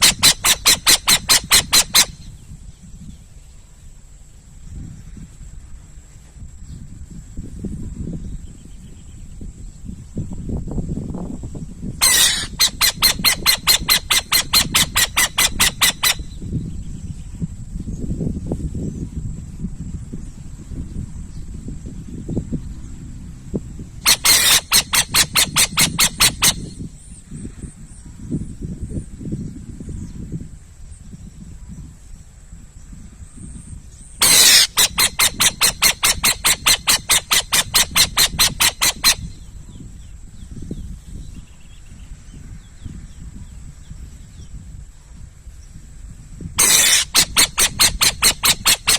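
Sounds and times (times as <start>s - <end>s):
owl calling raspy notes: 0.0s - 2.3s, 12.0s - 16.4s, 24.0s - 26.8s, 34.2s - 39.4s, 46.6s - 48.9s
owl hissing: 0.0s - 2.3s, 12.0s - 16.3s, 24.1s - 26.8s, 34.2s - 39.4s, 46.6s - 48.9s.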